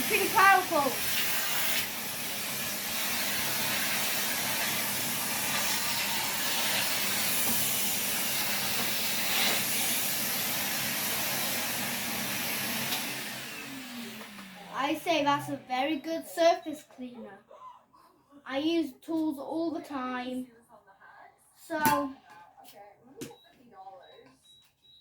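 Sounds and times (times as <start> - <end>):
vacuum cleaner running: 0.0 - 16.1.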